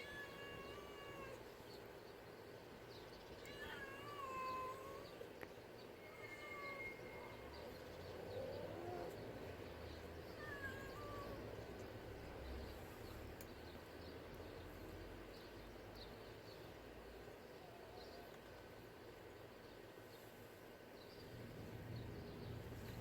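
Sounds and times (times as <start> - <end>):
cat meowing: 0.0 - 1.4, 3.4 - 5.2, 6.0 - 7.6, 10.3 - 11.6.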